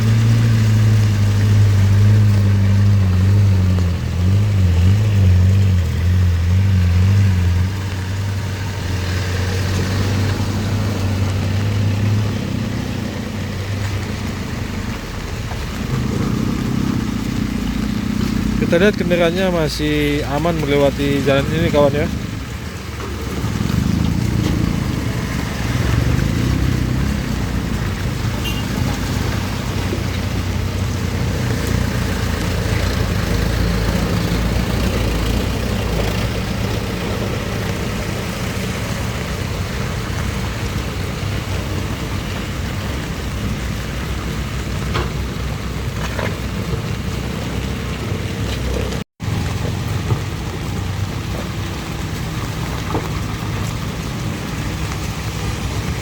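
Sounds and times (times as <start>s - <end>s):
tyres hissing on wet road: 0.0s - 56.0s
vehicle engines passing: 0.0s - 56.0s.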